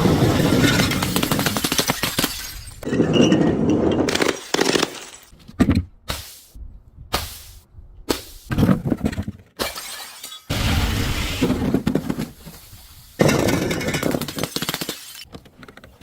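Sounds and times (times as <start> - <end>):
glass bottles shattering: 0.1 - 5.3, 9.6 - 10.8.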